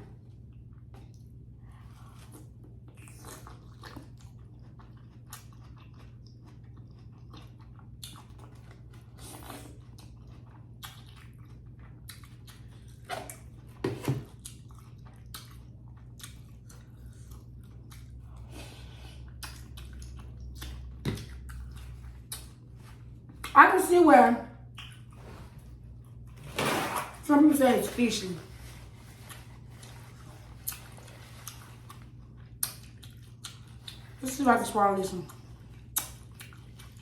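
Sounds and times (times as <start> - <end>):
low steady hum: 0.0 - 37.0
person chewing with mouth clicks: 2.0 - 13.7, 14.3 - 23.6, 24.7 - 25.2, 29.1 - 34.2, 35.3 - 37.0.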